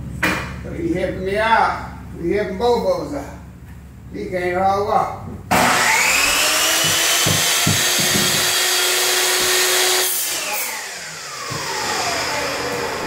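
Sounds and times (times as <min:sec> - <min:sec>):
power tool motor winding down: 0:05.5 - 0:13.0.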